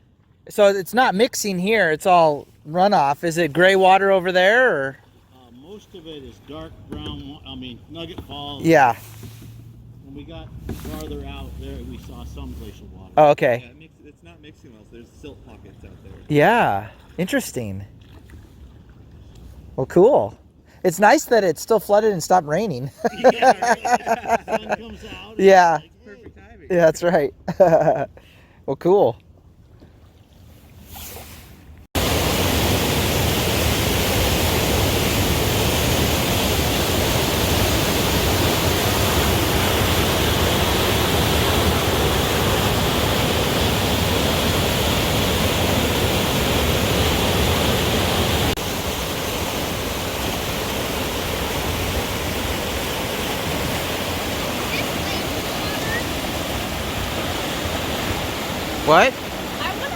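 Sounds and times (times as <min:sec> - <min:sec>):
rushing flood water: 0:00.5 - 0:13.6, 0:15.2 - 0:17.9, 0:23.0 - 0:25.8, 0:32.0 - 0:59.9.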